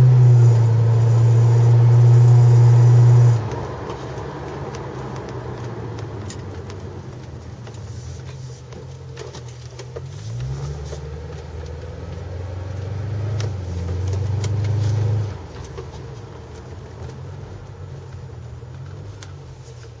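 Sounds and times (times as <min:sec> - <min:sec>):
car engine accelerating: 0:00.0 - 0:20.0.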